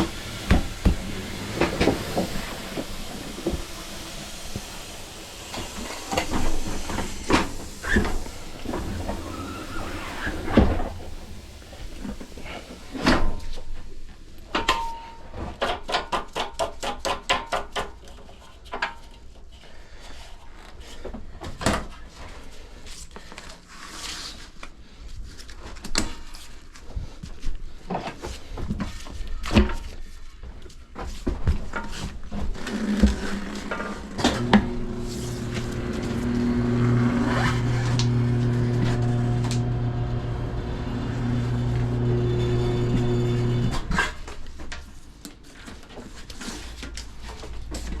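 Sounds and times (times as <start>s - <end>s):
knocks and clanks: 0.0s - 3.8s
motor humming: 0.0s - 12.6s, 33.8s - 44.0s.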